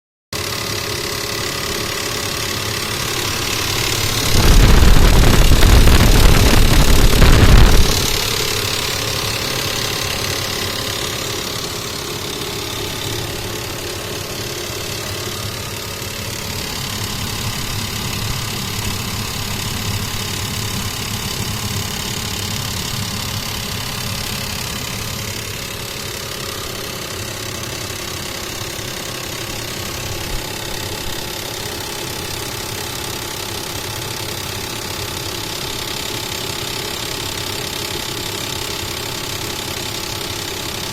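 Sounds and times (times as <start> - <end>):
loud rumbling noise: 1.2 - 27.6.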